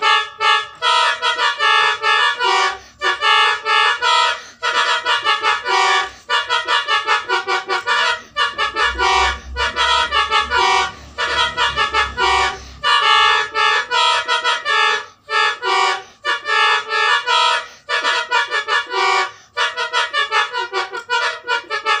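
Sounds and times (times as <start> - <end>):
air horns blaring a melody: 0.0 - 22.0
low hum: 7.4 - 13.8.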